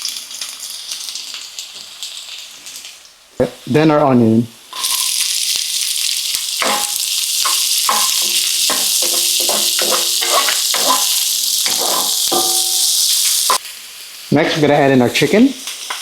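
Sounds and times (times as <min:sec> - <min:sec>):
onion and garlic sizzling in oil: 0:00.0 - 0:16.0
utensil scraping metal pan: 0:06.6 - 0:13.6.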